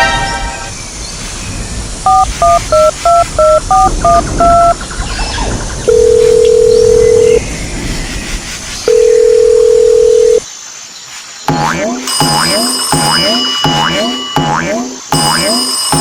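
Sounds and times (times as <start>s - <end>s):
telephone keypad beeps: 2.1s - 4.8s, 5.9s - 7.4s, 8.9s - 10.4s
telephone ringing tone: 2.1s - 4.8s, 5.9s - 7.4s, 8.9s - 10.5s.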